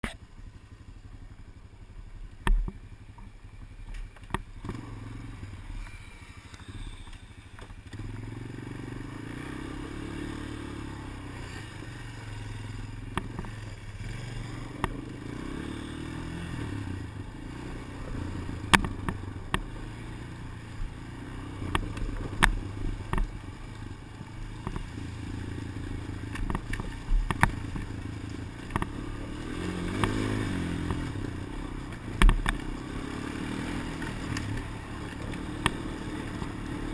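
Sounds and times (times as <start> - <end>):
engine running: 0.0 - 36.9.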